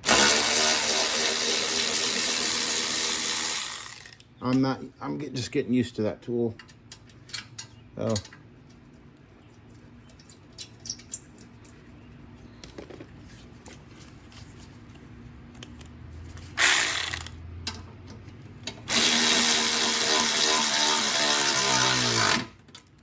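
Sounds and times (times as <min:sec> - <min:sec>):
power drill motor running: 0:00.0 - 0:04.2, 0:16.6 - 0:17.2, 0:18.9 - 0:22.5.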